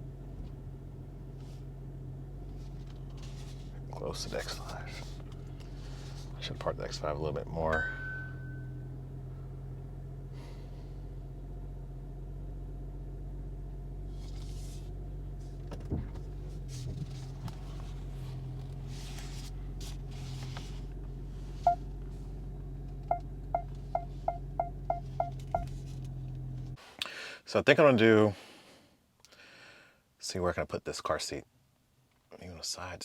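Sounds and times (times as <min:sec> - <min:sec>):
car engine running: 0:00.0 - 0:26.8
short evenly spaced beeps: 0:23.1 - 0:25.7.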